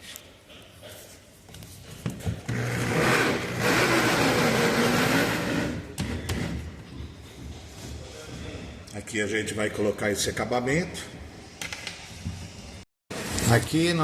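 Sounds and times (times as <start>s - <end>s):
electric drill boring through wood: 2.5s - 5.8s.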